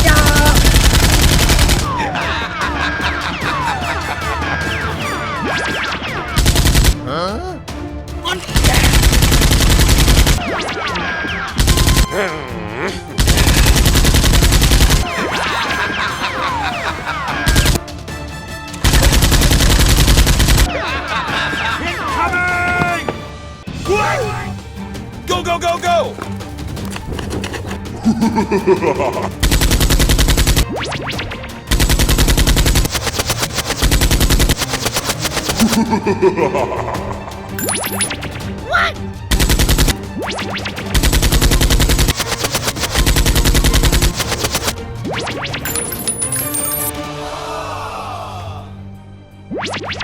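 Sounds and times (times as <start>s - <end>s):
machine-gun bursts: 0.0s - 1.9s, 6.4s - 7.0s, 8.6s - 10.4s, 11.6s - 12.1s, 13.2s - 15.1s, 18.8s - 20.7s, 29.4s - 30.6s, 31.7s - 35.8s, 39.3s - 40.0s, 40.9s - 44.8s
rapid automatic gunfire: 0.0s - 1.9s, 6.4s - 7.0s, 8.5s - 10.5s, 11.6s - 12.1s, 13.2s - 15.1s, 17.5s - 17.8s, 18.8s - 20.7s, 29.4s - 30.6s, 31.7s - 35.8s, 39.3s - 40.0s, 40.8s - 44.8s
lighter gunshots: 18.8s - 20.7s, 31.7s - 35.8s, 40.8s - 44.8s.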